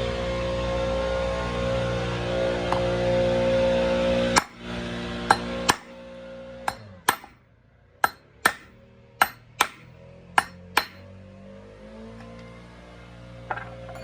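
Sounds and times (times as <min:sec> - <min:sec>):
hammer striking metal punch: 0:04.4 - 0:04.6, 0:05.3 - 0:06.0, 0:06.7 - 0:07.4, 0:08.0 - 0:11.0, 0:13.5 - 0:14.0.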